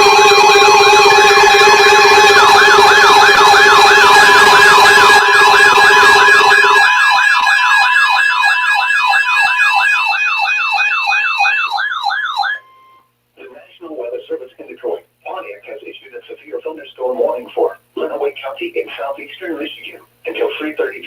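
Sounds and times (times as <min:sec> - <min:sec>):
electronic siren-like alert tone: 0:00.0 - 0:13.0.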